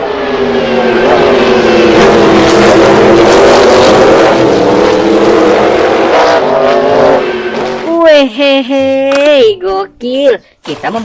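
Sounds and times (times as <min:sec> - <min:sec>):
race car engine at high revs: 0:00.0 - 0:08.0.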